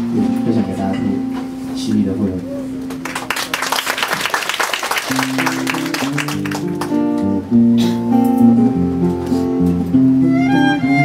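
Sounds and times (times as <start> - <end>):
acoustic string ensemble: 2.8 - 11.0
plucked strings: 5.2 - 11.0.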